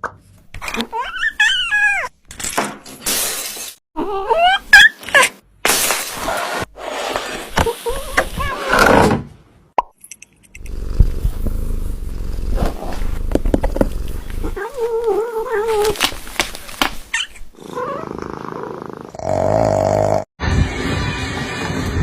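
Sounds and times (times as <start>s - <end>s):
cat purring: 10.6s - 15.8s.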